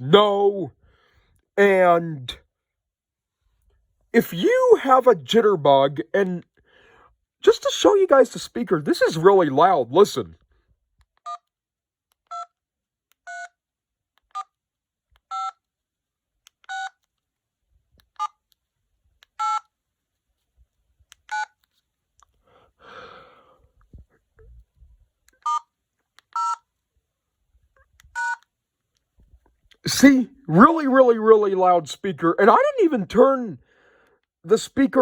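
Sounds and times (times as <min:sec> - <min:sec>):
phone keypad beeps: 0:15.3 - 0:15.6, 0:16.7 - 0:17.0, 0:19.4 - 0:19.7, 0:21.3 - 0:21.6, 0:25.4 - 0:25.7, 0:26.3 - 0:26.6, 0:28.2 - 0:28.4.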